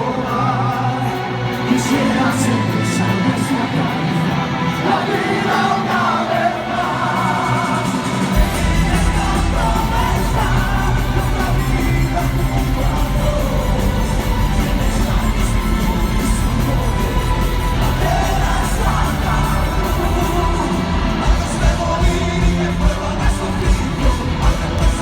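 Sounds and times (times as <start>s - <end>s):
live metal band playing: 0.0s - 25.0s
person singing: 0.0s - 25.0s
heavy bass and drums: 7.1s - 25.0s.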